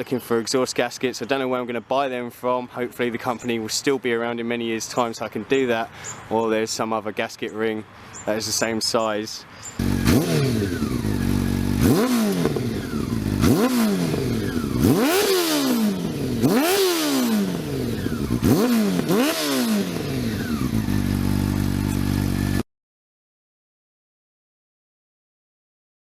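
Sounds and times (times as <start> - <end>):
motorcycle engine idling and revving: 9.8 - 22.6.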